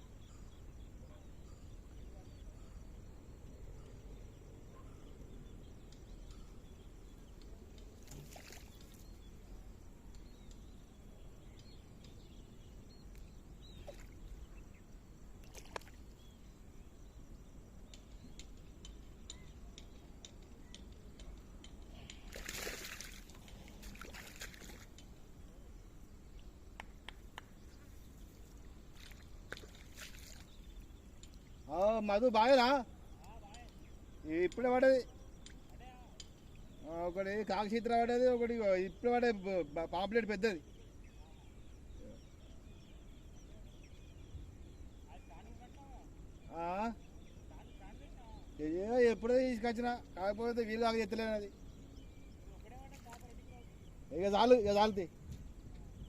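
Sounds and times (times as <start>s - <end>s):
outdoor background noise: 0.0s - 56.0s
water sloshing and trickling: 7.7s - 9.4s, 13.7s - 14.5s, 15.4s - 16.3s, 21.9s - 25.5s, 27.7s - 31.6s, 52.5s - 53.4s
water splashes: 8.0s - 9.0s, 13.8s - 14.3s, 22.2s - 25.0s, 28.5s - 30.6s, 52.7s - 53.4s.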